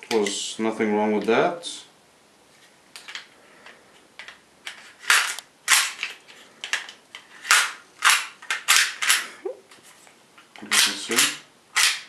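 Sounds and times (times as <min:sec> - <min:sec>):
pistol clicks: 0:07.4 - 0:09.3, 0:10.6 - 0:12.0.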